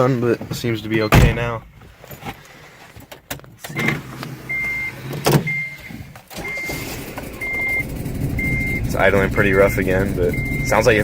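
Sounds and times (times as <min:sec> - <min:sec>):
dashboard warning chime: 0:04.5 - 0:11.0
car engine rough idle: 0:06.4 - 0:11.0.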